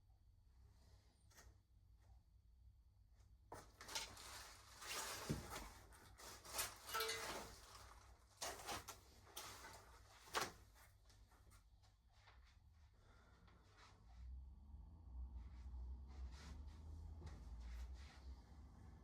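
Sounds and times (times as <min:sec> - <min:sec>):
rustling: 0:03.5 - 0:12.4.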